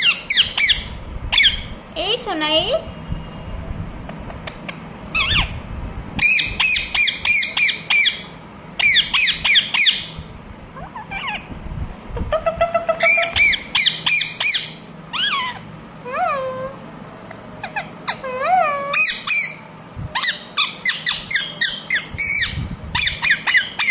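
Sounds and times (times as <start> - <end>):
parrot squawking: 0.0 - 1.7, 4.3 - 5.6, 6.2 - 10.2, 10.8 - 11.5, 12.3 - 23.9.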